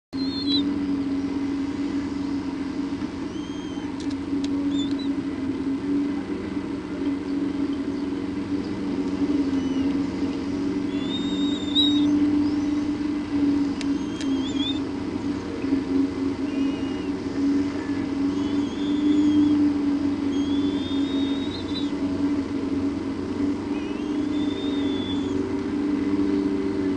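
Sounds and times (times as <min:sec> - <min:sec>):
steady low hum: 0:00.2 - 0:26.9
faint clicks: 0:03.9 - 0:05.1, 0:09.0 - 0:09.2, 0:13.8 - 0:14.4.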